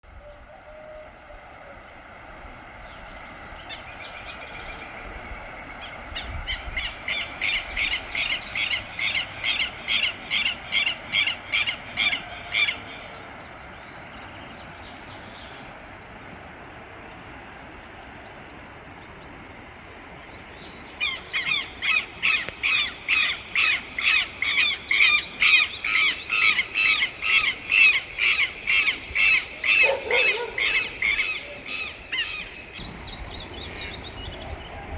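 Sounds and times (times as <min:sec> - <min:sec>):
lapwings calling harshly: 0:06.5 - 0:13.1, 0:21.0 - 0:34.9.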